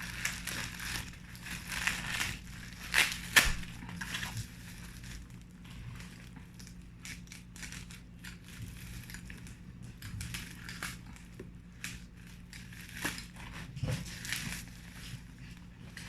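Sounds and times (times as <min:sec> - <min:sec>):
plastic packaging crinkling: 0:00.0 - 0:16.0
steady low hum: 0:00.0 - 0:16.0.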